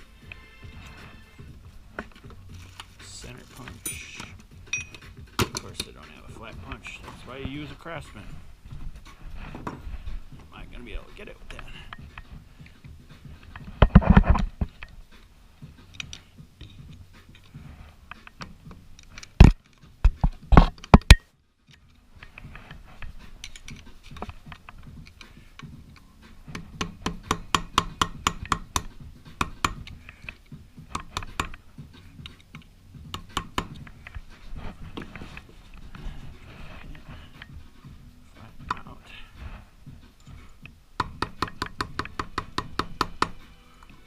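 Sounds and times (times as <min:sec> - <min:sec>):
hammer tapping steel punch: 0:25.2 - 0:31.6, 0:32.2 - 0:34.2, 0:41.0 - 0:43.5.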